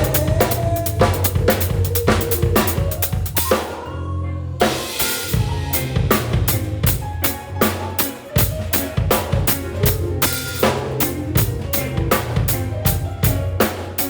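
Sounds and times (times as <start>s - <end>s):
drum kit groove: 0.0s - 3.9s, 4.6s - 14.0s
sustained low bass: 0.0s - 4.8s, 5.4s - 7.6s.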